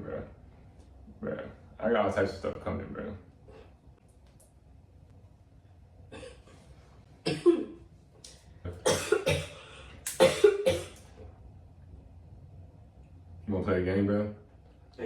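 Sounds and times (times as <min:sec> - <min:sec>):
person coughing: 0:06.1 - 0:06.5, 0:07.2 - 0:07.8, 0:08.7 - 0:11.0.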